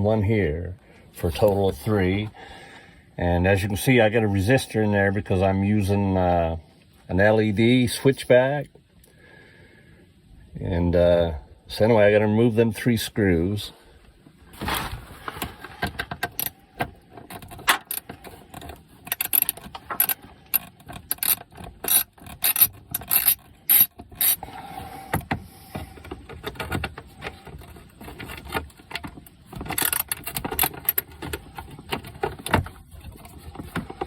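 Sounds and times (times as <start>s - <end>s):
hand ratchet clicking: 17.3s - 24.4s, 29.6s - 32.5s.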